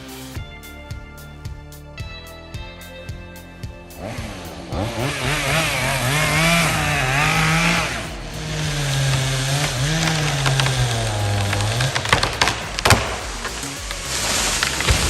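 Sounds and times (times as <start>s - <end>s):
chainsaw engine revving: 3.9s - 15.0s.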